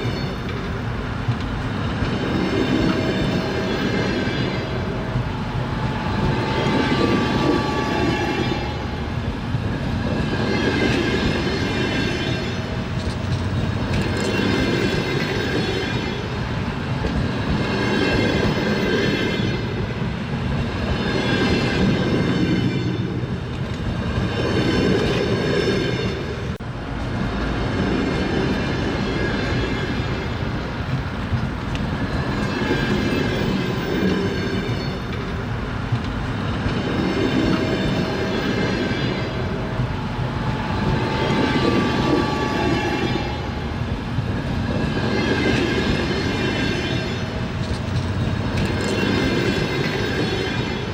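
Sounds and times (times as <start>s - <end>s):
train wheels clattering on rails: 0.0s - 50.9s.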